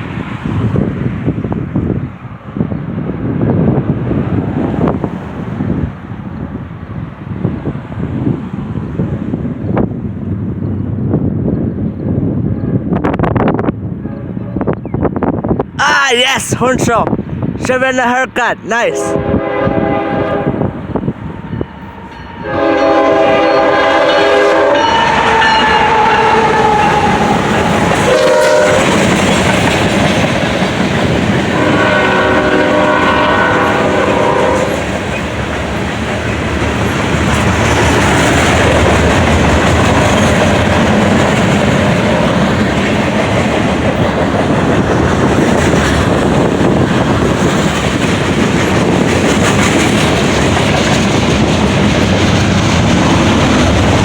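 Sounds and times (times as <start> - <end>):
diesel locomotives running: 0.0 - 54.0
locomotive air horn blasts: 18.9 - 29.1, 31.6 - 34.8
wheels clattering over rail joints: 25.1 - 31.6.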